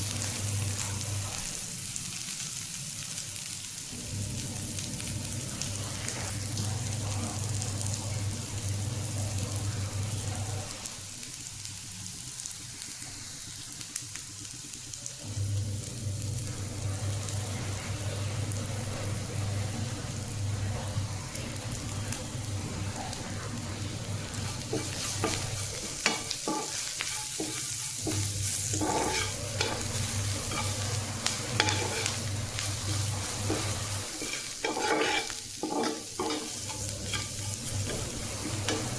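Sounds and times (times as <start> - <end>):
greens sizzling in a pan: 0.0 - 38.9
spatula scraping a pan: 24.3 - 38.9.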